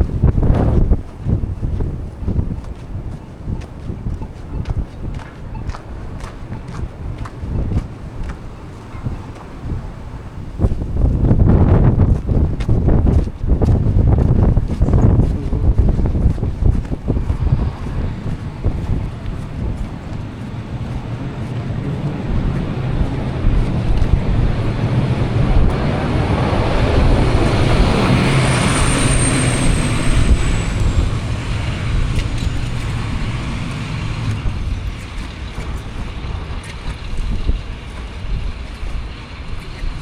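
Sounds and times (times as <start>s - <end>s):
low rumble: 0.0s - 40.0s
motor vehicle passing: 0.0s - 40.0s
high squeal sliding down: 27.2s - 31.1s.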